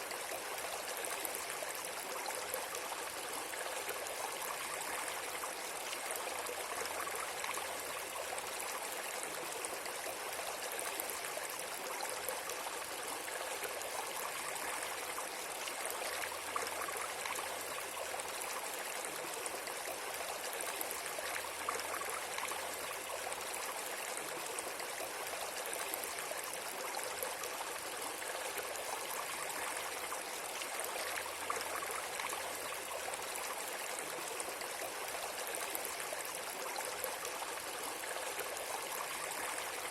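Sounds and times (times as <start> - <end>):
flowing water rushing: 0.0 - 39.9.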